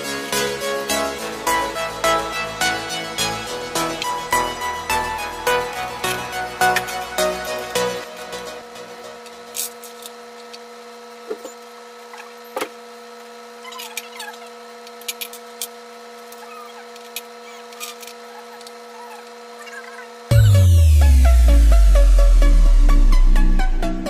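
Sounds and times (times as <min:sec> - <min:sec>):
electrical hum: 0:19.8 - 0:24.0.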